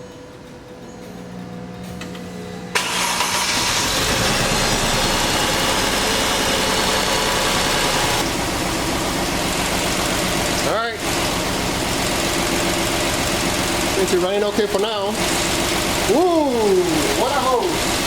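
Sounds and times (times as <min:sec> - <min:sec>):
engine running steadily: 0:01.5 - 0:18.0
engine cranking on starter: 0:02.7 - 0:08.3.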